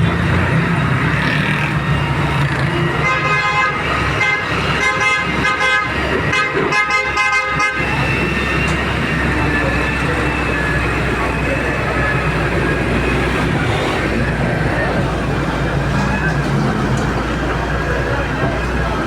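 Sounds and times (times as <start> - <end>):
diesel engine rumble: 0.0 - 19.0
vehicle horn honking: 2.8 - 8.3.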